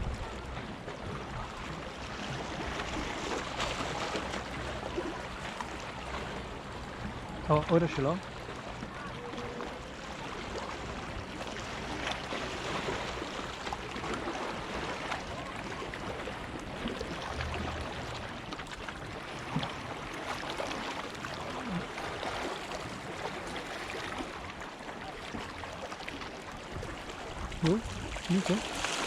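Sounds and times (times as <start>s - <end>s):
sea water lapping against rocks: 0.0s - 29.0s
small splashes: 1.5s - 6.4s, 8.3s - 29.0s.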